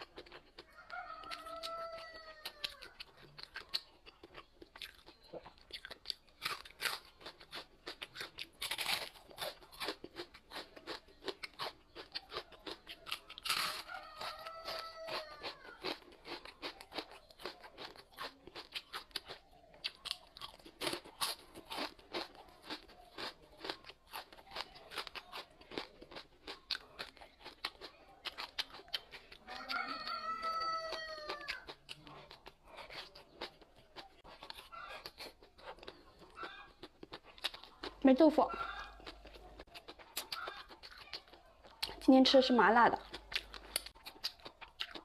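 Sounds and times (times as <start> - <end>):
crunchy chewing and biting: 0.0 - 45.0
rooster crowing: 0.6 - 3.1, 13.6 - 16.0, 29.4 - 31.8, 38.5 - 39.1.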